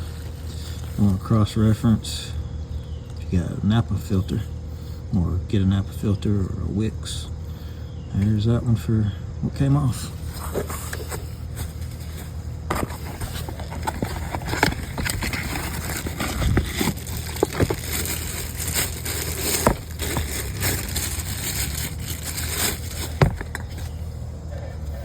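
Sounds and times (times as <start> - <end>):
steady low hum: 0.0 - 25.0
hands handling parts: 10.2 - 24.2.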